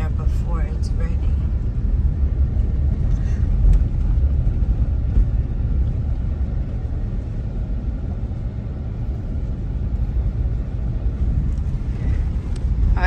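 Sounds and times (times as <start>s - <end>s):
car engine and tyre noise: 0.0s - 13.0s.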